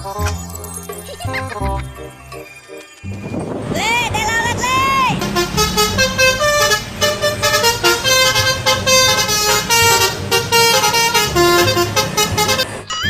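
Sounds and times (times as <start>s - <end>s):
multi-tone bus horn tune: 3.5s - 13.0s.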